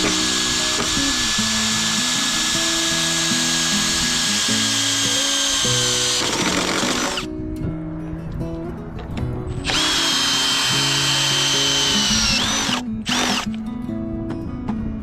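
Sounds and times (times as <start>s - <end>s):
power drill whine: 0.0s - 7.3s, 9.6s - 13.5s.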